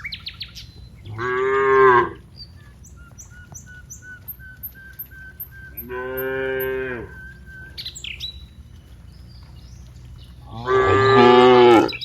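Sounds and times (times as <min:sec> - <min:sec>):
cow mooing: 0:01.0 - 0:02.2, 0:05.7 - 0:07.4, 0:10.4 - 0:12.0.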